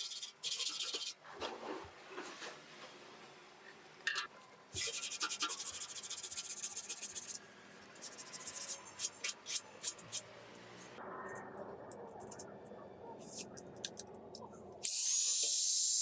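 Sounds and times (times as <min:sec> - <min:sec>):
raspy sanding strokes on metal: 0:04.8 - 0:07.4.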